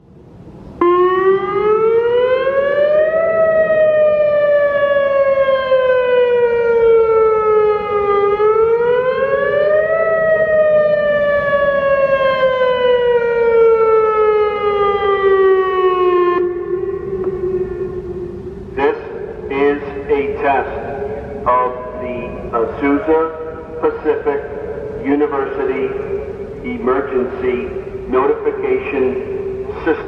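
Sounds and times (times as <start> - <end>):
electronic siren wailing: 0.8 - 22.6.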